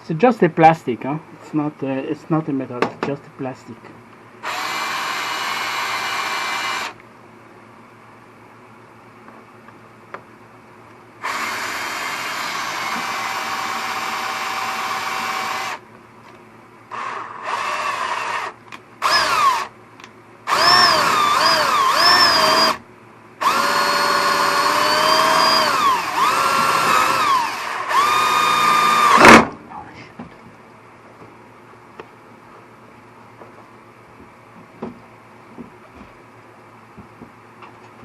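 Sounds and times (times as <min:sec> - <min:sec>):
power drill drilling plastic: 0:04.4 - 0:07.0, 0:11.2 - 0:15.8, 0:16.9 - 0:19.7, 0:20.5 - 0:22.8, 0:23.4 - 0:29.4.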